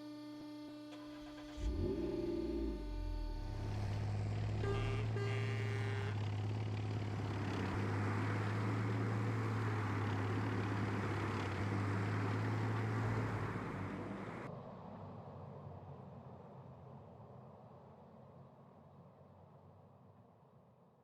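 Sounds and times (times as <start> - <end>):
cartoon engine humming: 0.0 - 14.5.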